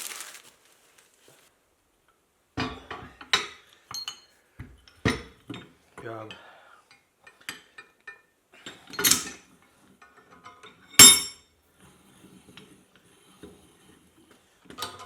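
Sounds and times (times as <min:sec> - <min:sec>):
metal strikes clanging: 0:11.0 - 0:11.3.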